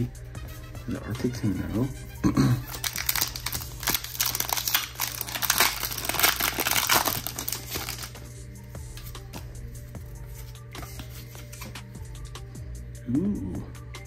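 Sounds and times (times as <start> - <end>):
background music: 0.0 - 14.0
foil wrapper crinkling: 2.7 - 8.2.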